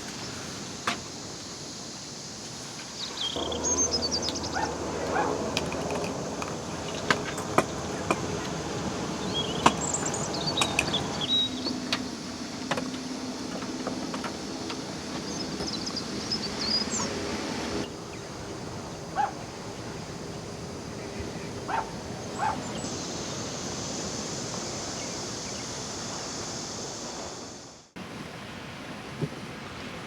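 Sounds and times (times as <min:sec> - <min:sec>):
birds chirping: 0:03.2 - 0:19.3
low hum: 0:03.4 - 0:22.3.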